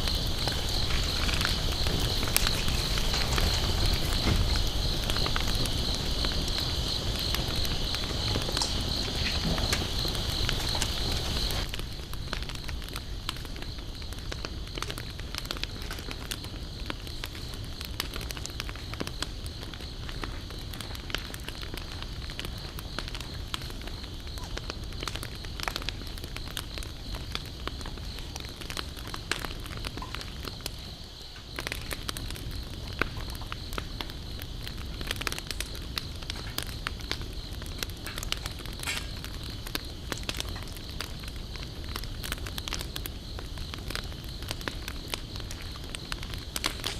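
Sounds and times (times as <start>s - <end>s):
campfire crackling and popping: 0.0s - 46.9s.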